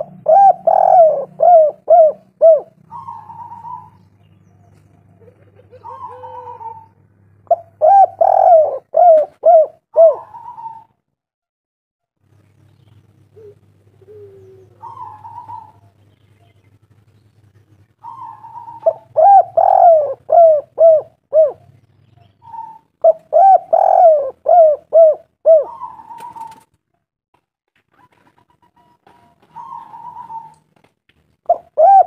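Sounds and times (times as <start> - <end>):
dove cooing: 0.0 - 4.0, 4.7 - 10.9, 13.3 - 16.0, 18.0 - 26.7, 28.0 - 30.8, 31.5 - 32.0.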